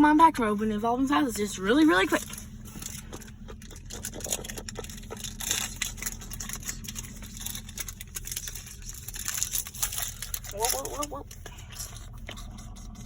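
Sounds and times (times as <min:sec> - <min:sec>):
foil wrapper tearing and crinkling: 0:02.1 - 0:12.7.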